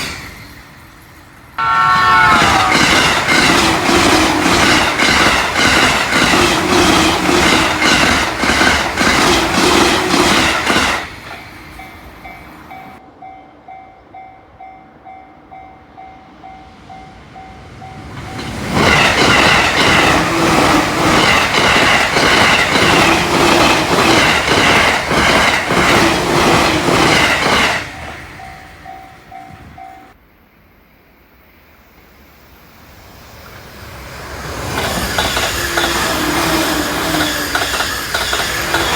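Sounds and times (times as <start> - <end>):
train approaching: 0.0 - 38.9
train wheels clattering over rail joints: 2.5 - 12.4, 18.1 - 29.0, 34.6 - 38.9.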